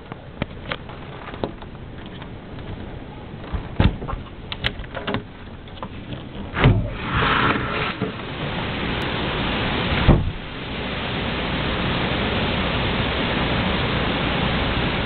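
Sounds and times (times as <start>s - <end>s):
hurricane wind and rain: 0.0s - 15.0s
knocks and thumps: 2.6s - 6.9s, 10.0s - 10.4s.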